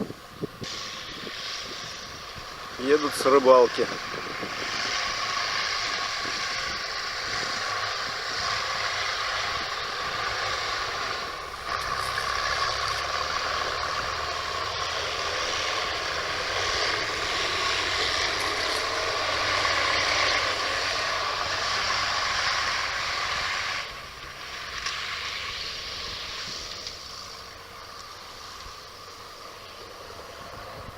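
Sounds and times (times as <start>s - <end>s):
steady rushing noise: 0.0s - 24.6s
distant vehicle engines running: 0.0s - 30.9s.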